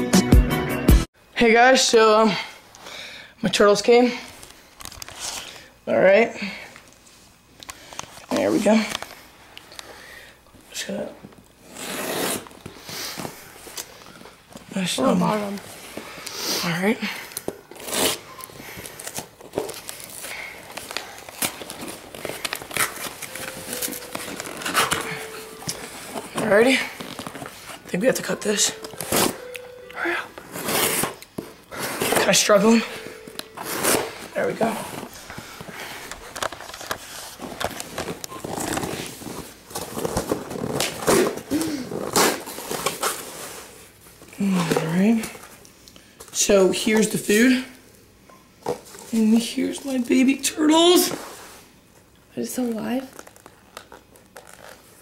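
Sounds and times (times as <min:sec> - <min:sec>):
packaging rustling and crinkling: 0:17.3 - 0:29.6, 0:30.3 - 0:46.4, 0:52.6 - 0:55.0.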